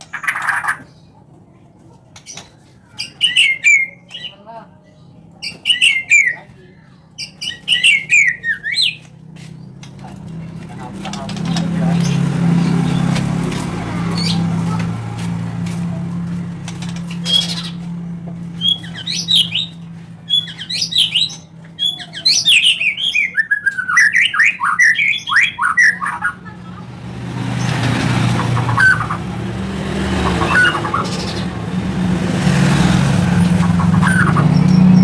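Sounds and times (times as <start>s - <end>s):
bird singing whistled phrases: 3.0s - 4.4s, 5.4s - 6.5s, 7.2s - 9.0s, 18.6s - 26.4s, 33.6s - 35.0s.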